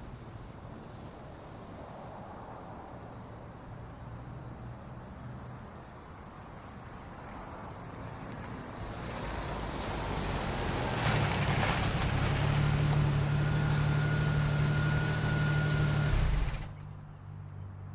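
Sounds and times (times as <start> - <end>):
car engine droning: 9.5 - 17.2.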